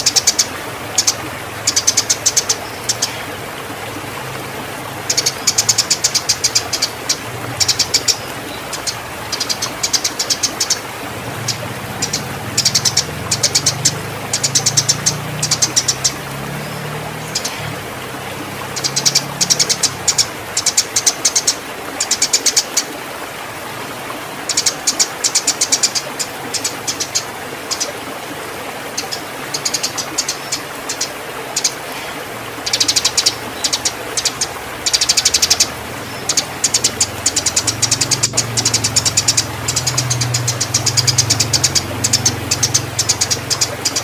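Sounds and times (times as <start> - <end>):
sparrow chattering chirps: 5.1 - 10.8, 11.4 - 16.2, 18.8 - 22.6, 32.7 - 44.0.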